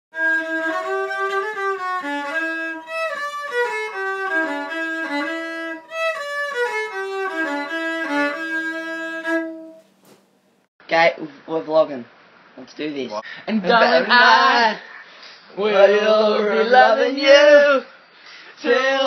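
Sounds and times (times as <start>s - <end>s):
string melody over chords: 0.2s - 9.8s.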